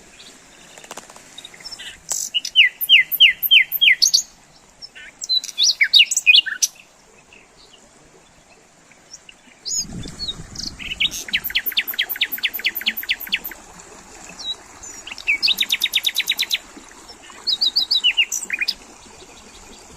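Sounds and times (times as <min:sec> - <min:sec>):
songbirds singing and chirping: 0:00.1 - 0:13.6, 0:14.3 - 0:19.9
bird trills: 0:01.7 - 0:04.3, 0:10.6 - 0:13.6.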